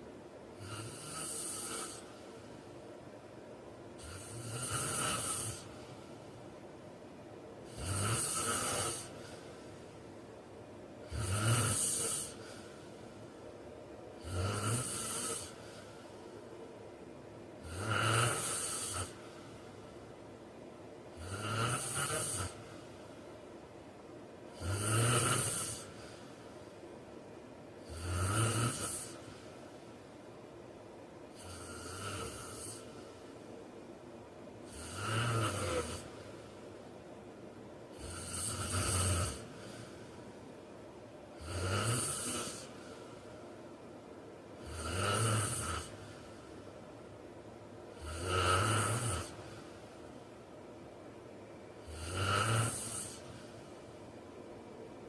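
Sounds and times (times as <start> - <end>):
man snoring: 0.6 - 2.2, 4.0 - 5.8, 7.6 - 9.4, 11.0 - 12.7, 14.2 - 15.8, 17.6 - 19.3, 21.1 - 22.7, 24.5 - 26.2, 27.8 - 29.4, 31.3 - 33.2, 34.6 - 36.5, 37.9 - 40.3, 41.4 - 43.3, 44.6 - 46.6, 47.9 - 49.8, 51.8 - 53.6.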